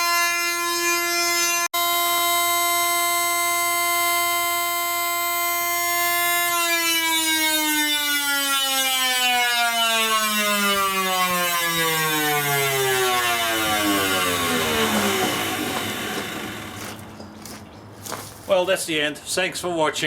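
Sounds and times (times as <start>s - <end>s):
washing machine drum whining: 10.4s - 17.2s.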